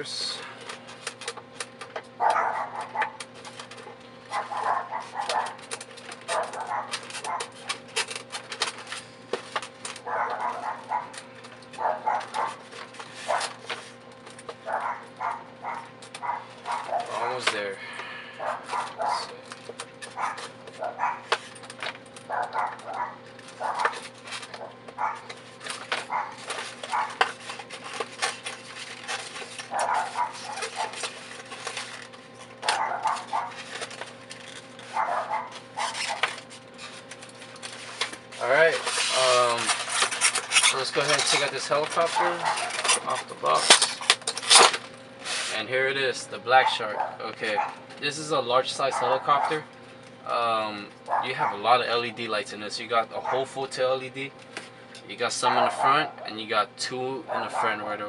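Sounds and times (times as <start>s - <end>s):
faint electrical hum: 0.0s - 58.0s
plastic packaging crinkling: 18.4s - 45.5s.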